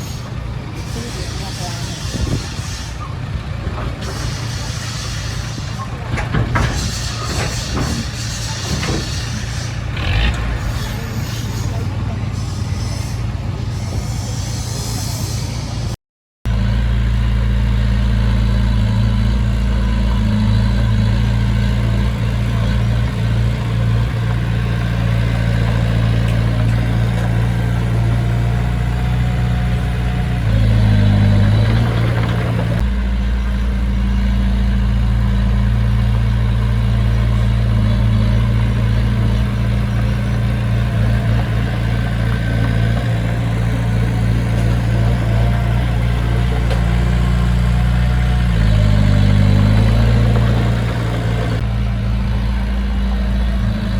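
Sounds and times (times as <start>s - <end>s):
diesel engine running: 0.0s - 15.8s, 16.5s - 53.9s.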